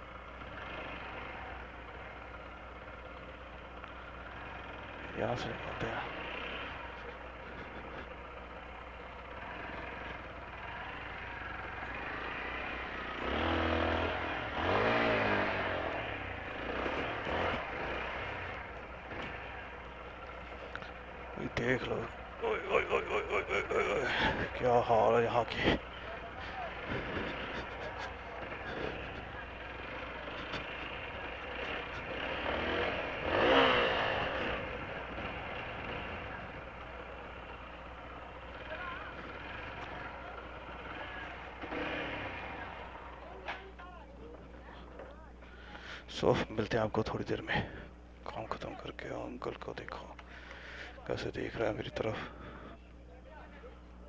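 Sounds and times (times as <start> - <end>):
motorcycle riding on rough road: 0.0 - 54.0
passing vehicle noise: 3.9 - 43.8.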